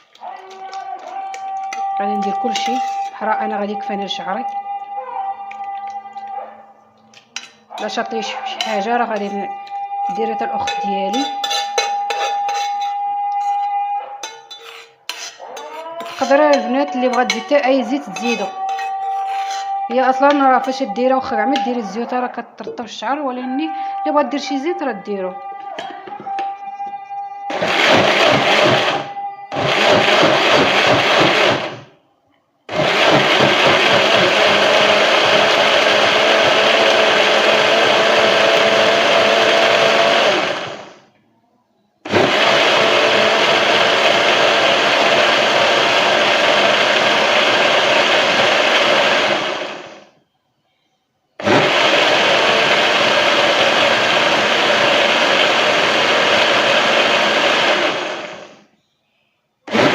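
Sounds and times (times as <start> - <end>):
electric blender grinding: 27.5 - 31.9, 32.7 - 41.0, 42.1 - 50.0, 51.4 - 58.6, 59.7 - 59.9.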